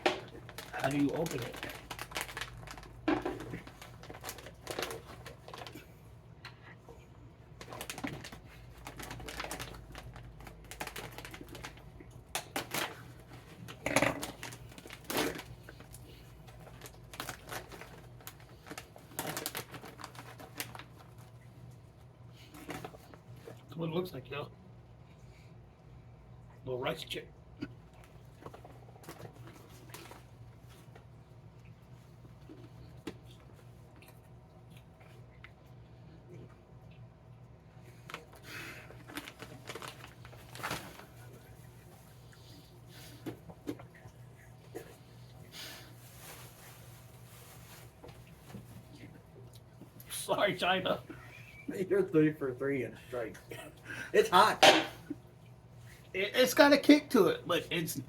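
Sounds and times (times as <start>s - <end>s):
crunching of rice chips: 0.0s - 5.8s, 7.6s - 21.3s, 38.0s - 41.6s
plastic snack packet crinkling: 0.0s - 5.8s, 7.6s - 21.4s, 28.4s - 30.9s, 37.9s - 41.7s
low room hum: 0.0s - 58.0s.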